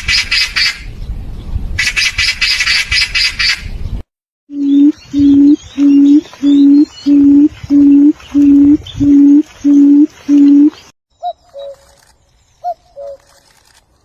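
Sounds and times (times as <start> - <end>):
bird hooting: 4.6 - 11.9, 12.6 - 13.2.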